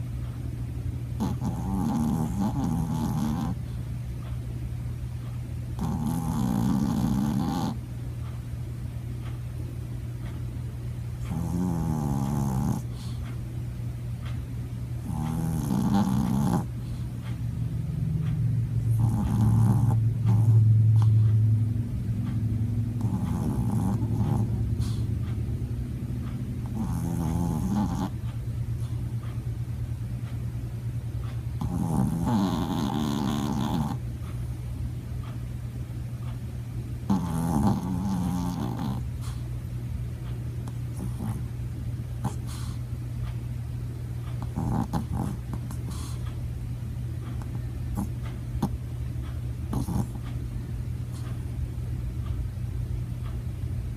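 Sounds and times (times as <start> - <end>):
steady low hum: 0.0 - 53.9
dog snoring: 1.2 - 3.8, 5.8 - 7.8, 11.2 - 13.3, 15.0 - 17.4, 18.2 - 21.3, 23.0 - 25.1, 26.6 - 29.0, 31.6 - 34.0, 37.1 - 39.4, 40.6 - 41.6, 42.2 - 42.8, 44.4 - 46.3, 47.3 - 48.8, 49.7 - 50.3.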